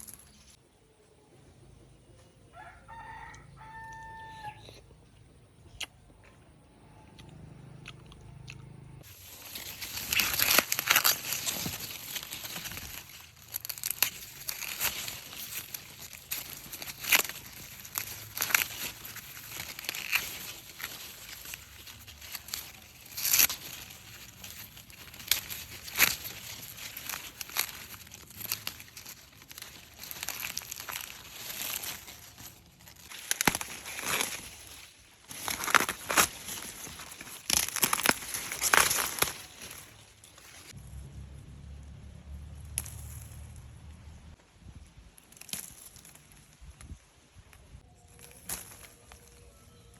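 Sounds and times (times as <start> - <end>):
plant material rustling and crunching: 0.0 - 0.6, 9.0 - 49.9
plant stems snapping: 9.2 - 40.7, 48.1 - 49.5.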